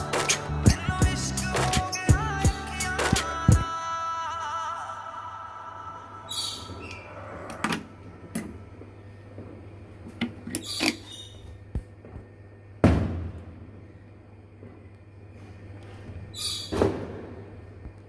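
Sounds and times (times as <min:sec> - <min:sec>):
background music: 0:00.0 - 0:07.4
loud thump: 0:12.8 - 0:13.4.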